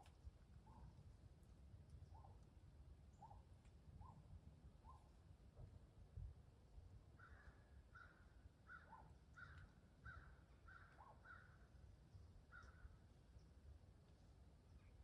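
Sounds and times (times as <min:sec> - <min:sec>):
faint bird calls: 0:07.2 - 0:11.6, 0:12.5 - 0:13.0.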